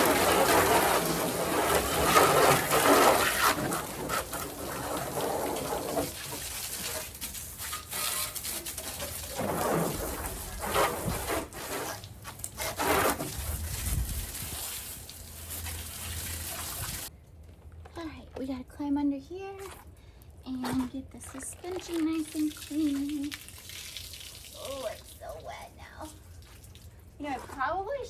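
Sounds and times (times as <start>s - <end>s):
hose water spraying: 0.0s - 17.1s.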